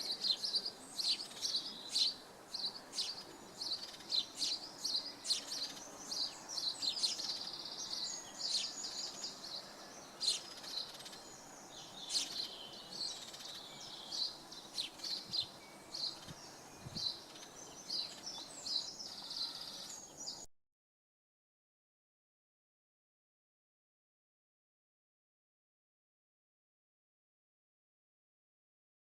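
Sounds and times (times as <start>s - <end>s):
songbirds singing and chirping: 0.0s - 20.5s.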